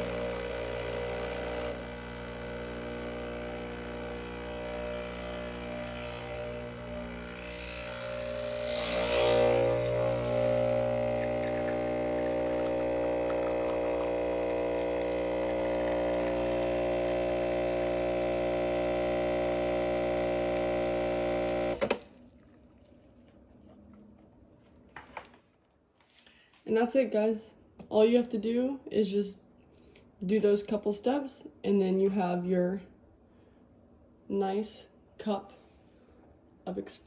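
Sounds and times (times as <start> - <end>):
espresso machine pump humming: 0.0 - 22.0
pump switching off click: 21.5 - 22.1.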